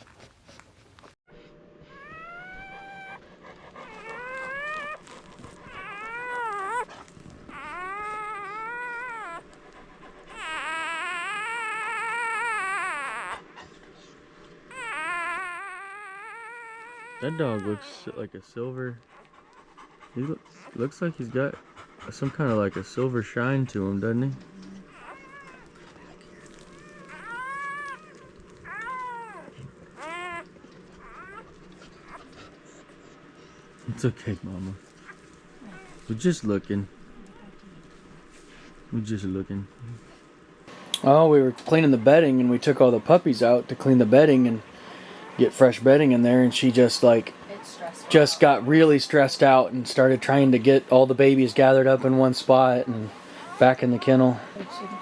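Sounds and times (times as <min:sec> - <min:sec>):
puppy crying in high whines: 0:01.9 - 0:09.5, 0:10.3 - 0:13.5, 0:14.7 - 0:18.2, 0:24.9 - 0:32.3, 0:35.6 - 0:36.0, 0:53.1 - 0:55.0.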